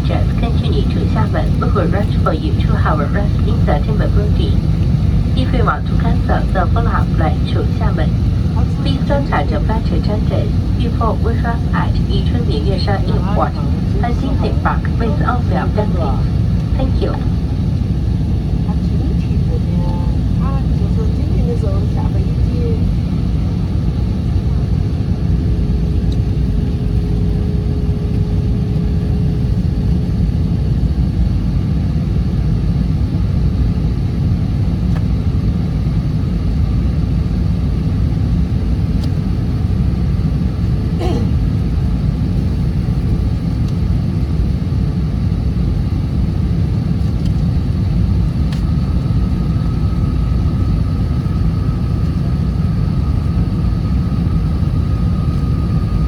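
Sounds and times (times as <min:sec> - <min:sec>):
airliner engine and airflow rumble: 0:00.0 - 0:56.0
faint hum: 0:00.0 - 0:56.0
click: 0:48.5 - 0:48.7.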